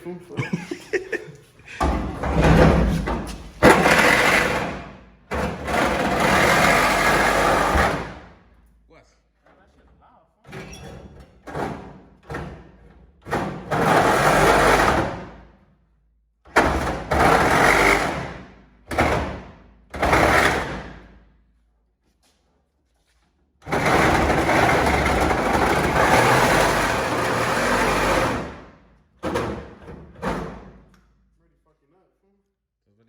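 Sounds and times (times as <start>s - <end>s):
power tool cutting sheet metal: 3.6s - 4.8s, 5.5s - 8.1s, 17.0s - 18.4s, 23.6s - 28.5s.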